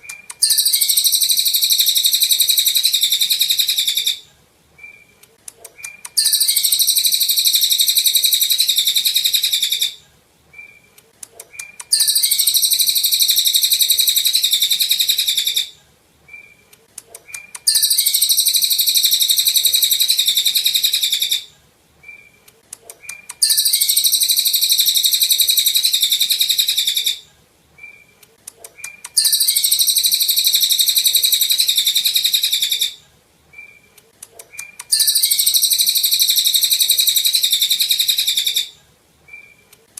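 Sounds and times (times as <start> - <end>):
songbird high fast trill: 17.7 - 21.5, 23.4 - 27.2, 29.2 - 33.0, 34.9 - 38.7.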